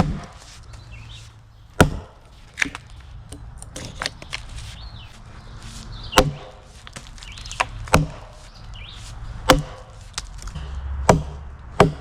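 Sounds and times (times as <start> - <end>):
axe chopping a log: 0.0 - 0.4, 1.8 - 2.9, 6.1 - 12.0.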